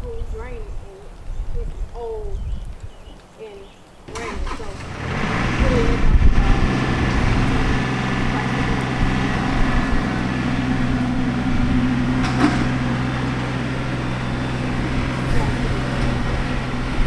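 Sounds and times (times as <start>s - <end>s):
diesel engine droning: 4.1s - 17.0s.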